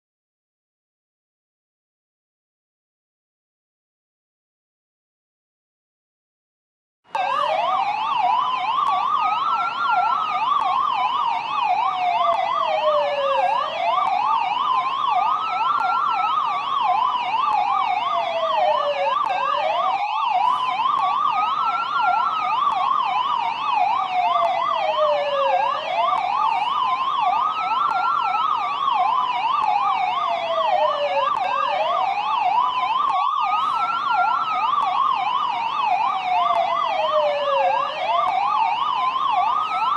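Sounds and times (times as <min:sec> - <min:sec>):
police siren wail and yelp: 0:07.2 - 0:39.9.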